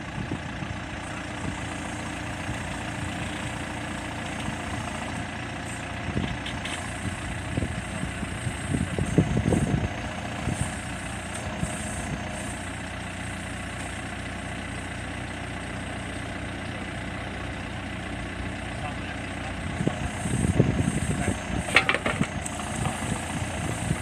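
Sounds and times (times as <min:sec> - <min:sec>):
diesel engine idling: 0:00.0 - 0:24.0
low thuds and clunks: 0:21.6 - 0:23.0.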